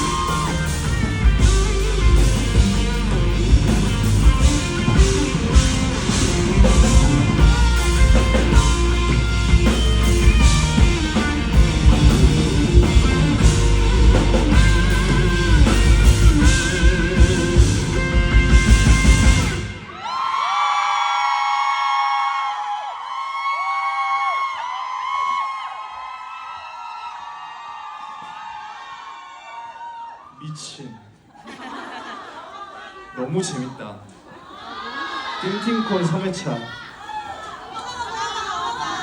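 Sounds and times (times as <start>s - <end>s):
drum kit hits: 0.0s - 19.9s
live rock band playing: 0.0s - 20.0s
electric guitar: 0.0s - 20.1s.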